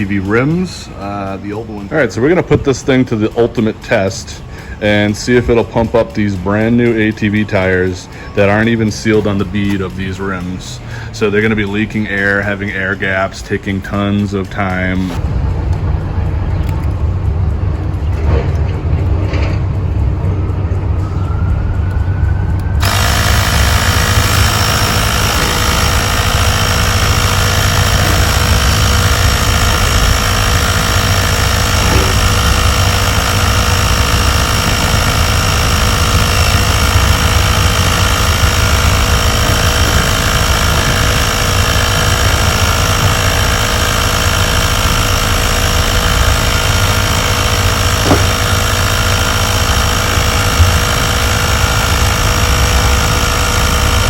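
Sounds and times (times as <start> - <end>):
air compressor humming: 0.0 - 15.6, 19.3 - 54.0.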